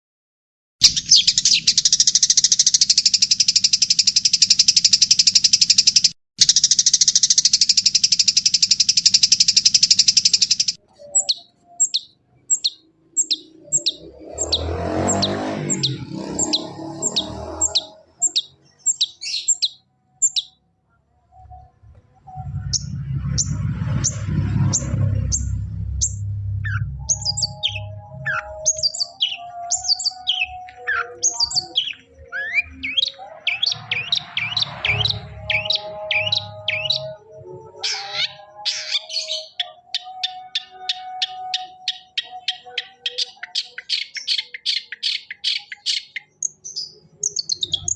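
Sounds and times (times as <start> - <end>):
bird sharp descending chirps: 11.2 - 20.6, 21.3 - 37.2
low rumbling noise: 21.1 - 28.9.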